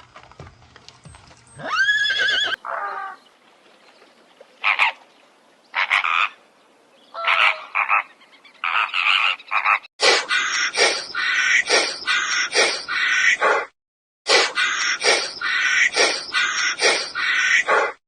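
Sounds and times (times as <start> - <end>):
rasping croaking calls: 5.7 - 6.4, 7.1 - 13.7, 14.3 - 18.0.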